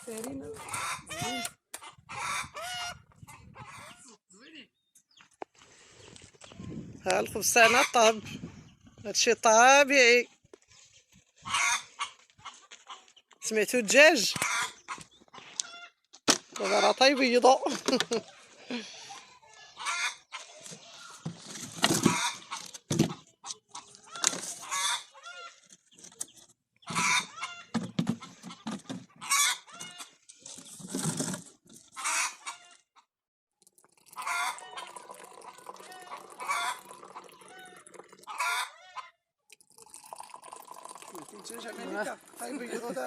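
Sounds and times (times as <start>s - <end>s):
hens cackling: 0.4s - 4.2s, 7.4s - 8.2s, 11.3s - 13.3s, 14.2s - 16.0s, 16.6s - 21.3s, 22.0s - 25.7s, 26.8s - 30.2s, 31.9s - 33.1s, 34.1s - 39.3s.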